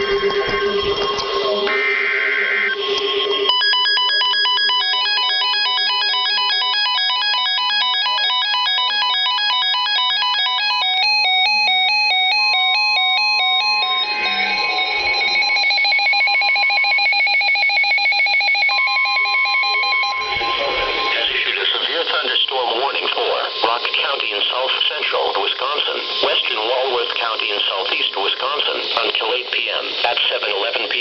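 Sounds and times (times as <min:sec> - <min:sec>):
electronic alert beeps: 0:00.0 - 0:24.6
weather warning broadcast: 0:18.9 - 0:31.0.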